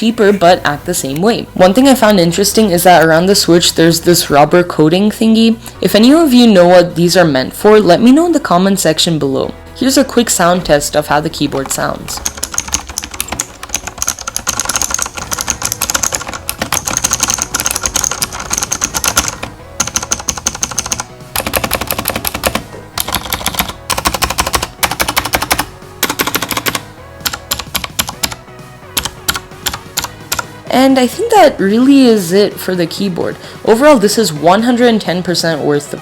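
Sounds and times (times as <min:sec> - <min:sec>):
mechanical keyboard clicks: 0:11.6 - 0:28.4, 0:29.0 - 0:30.5.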